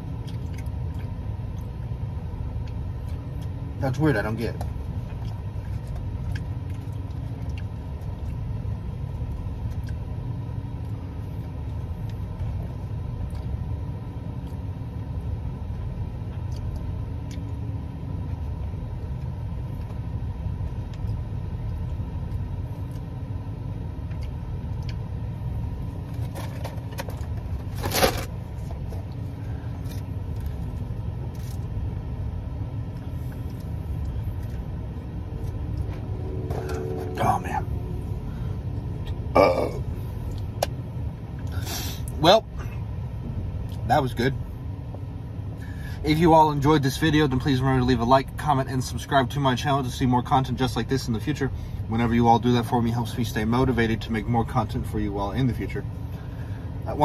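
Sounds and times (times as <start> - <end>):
steady low rumble: 0.0 - 57.0.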